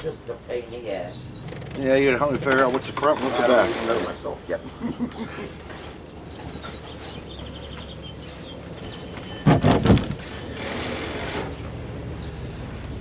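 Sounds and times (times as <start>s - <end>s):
clatter of knocks: 1.4s - 1.9s, 8.8s - 11.8s.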